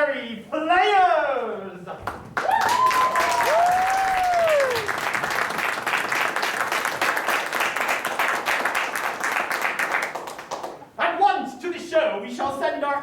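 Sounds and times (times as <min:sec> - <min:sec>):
person whooping: 0:02.4 - 0:04.9
audience applauding: 0:02.4 - 0:10.8.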